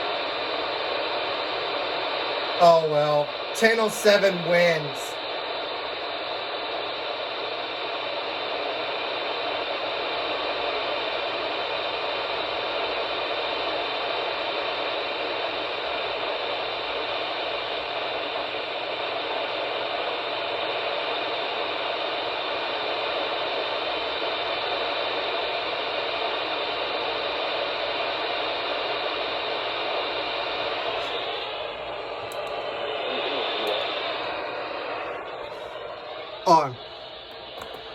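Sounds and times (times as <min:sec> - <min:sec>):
radio static hiss: 0:02.6 - 0:07.9, 0:30.2 - 0:37.9.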